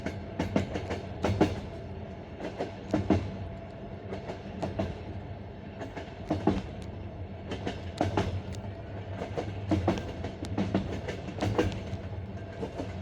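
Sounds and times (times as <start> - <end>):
rumble of moving train: 0.0 - 13.0
train wheels clattering over rail joints: 2.4 - 3.4, 5.8 - 6.8, 7.5 - 13.0.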